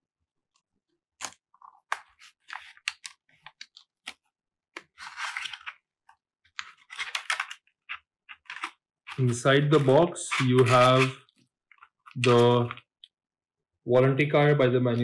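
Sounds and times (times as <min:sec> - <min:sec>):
packaging rustling scrapes: 0:04.8 - 0:05.8, 0:06.6 - 0:07.6, 0:08.3 - 0:11.2.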